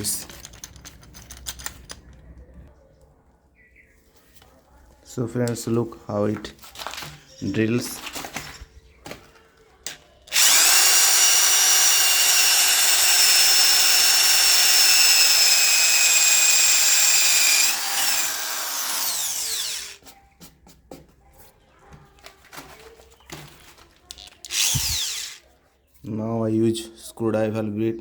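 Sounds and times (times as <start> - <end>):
electric drill whining: 10.3 - 20.0, 24.4 - 25.4.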